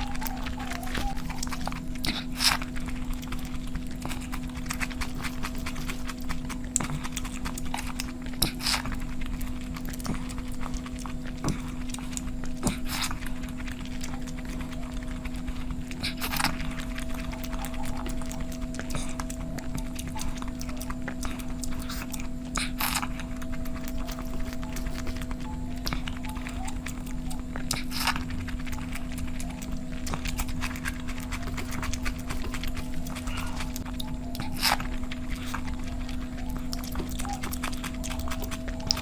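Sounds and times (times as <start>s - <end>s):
electrical hum: 0.0s - 39.0s
person chewing and lip smacking: 0.0s - 39.0s.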